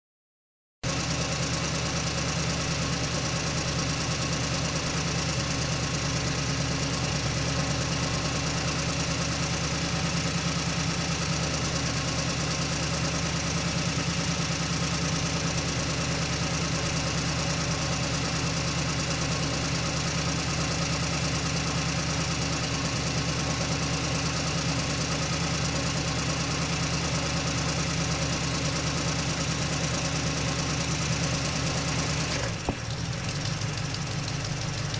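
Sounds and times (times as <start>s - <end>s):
truck engine humming: 27.8s - 34.9s.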